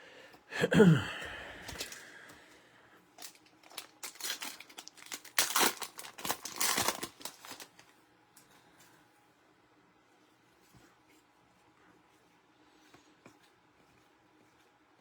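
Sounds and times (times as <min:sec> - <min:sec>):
plastic packaging crinkling: 0:03.2 - 0:08.0.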